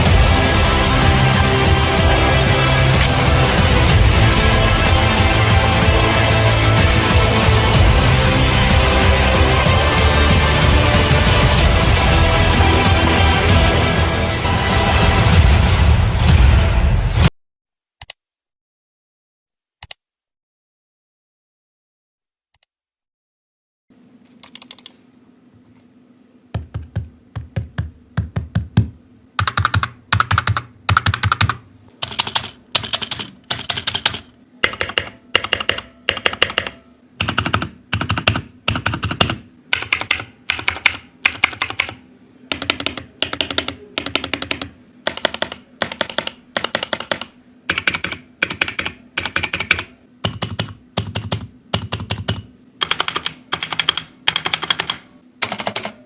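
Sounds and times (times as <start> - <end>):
faint steady hum: 23.9 - 56.0
typing on computer keyboard: 24.4 - 24.9, 29.4 - 56.0.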